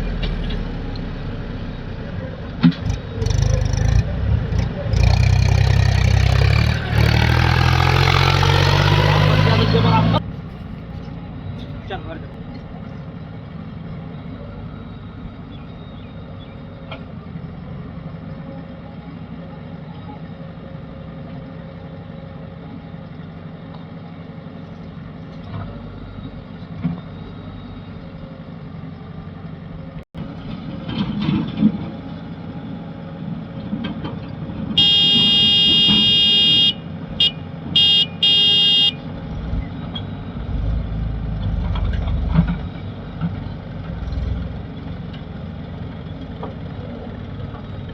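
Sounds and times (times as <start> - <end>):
heavy machinery engines running: 0.0 - 47.9
vehicle horn tooting: 34.8 - 39.0.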